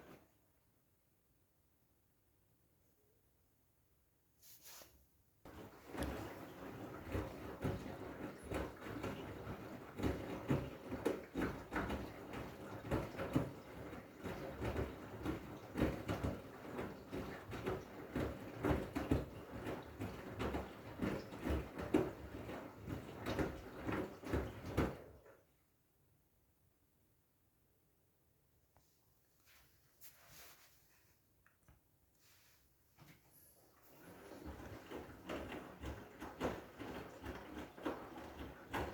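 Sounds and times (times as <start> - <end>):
washing machine drum thudding: 5.5 - 25.2, 34.0 - 38.9.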